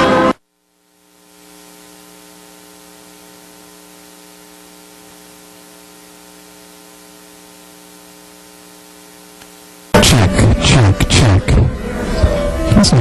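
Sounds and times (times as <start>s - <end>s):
electrical mains hum with hiss: 0.0s - 13.0s
amplified guitar: 9.9s - 13.0s.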